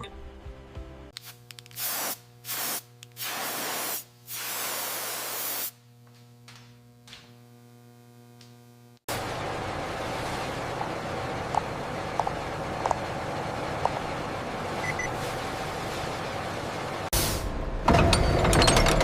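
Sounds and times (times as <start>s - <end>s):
loud hissing bursts: 1.8s - 5.7s
steady low hum: 5.7s - 17.7s
different steady noise: 9.1s - 17.1s.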